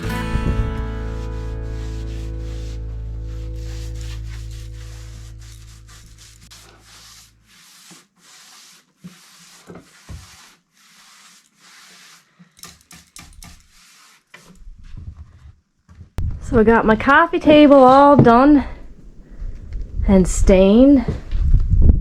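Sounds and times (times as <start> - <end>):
background music: 0.0 - 6.5
hand rubbing on wood: 0.6 - 12.3, 13.4 - 14.2, 17.1 - 21.3.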